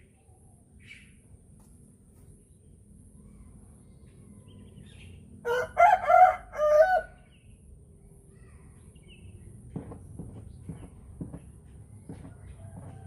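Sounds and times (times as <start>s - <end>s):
rooster crowing: 5.4s - 7.2s.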